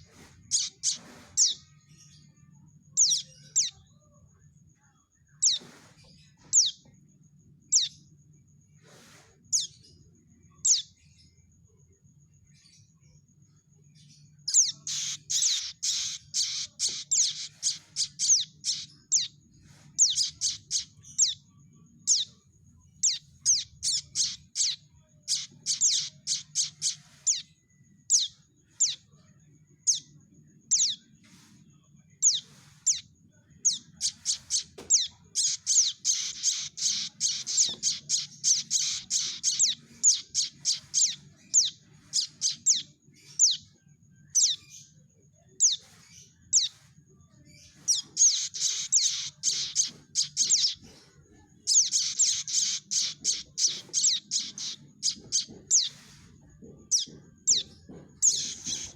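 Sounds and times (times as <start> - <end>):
young birds begging calls: 14.5 - 19.3, 20.0 - 21.4, 23.0 - 27.4, 34.0 - 42.8, 47.9 - 50.8, 51.7 - 56.1, 56.9 - 58.9.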